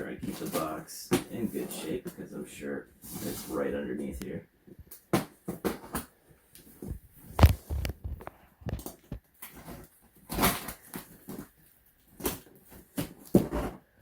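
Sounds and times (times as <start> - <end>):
cardboard box knocks and rustles: 6.7 - 11.6, 12.2 - 13.8.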